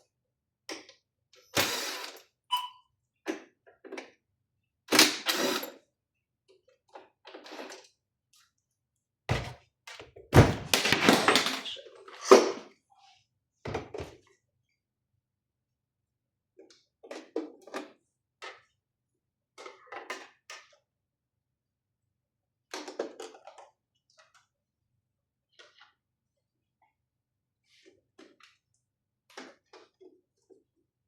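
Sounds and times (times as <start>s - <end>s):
knocks and clatter of machine parts: 9.3s - 11.8s.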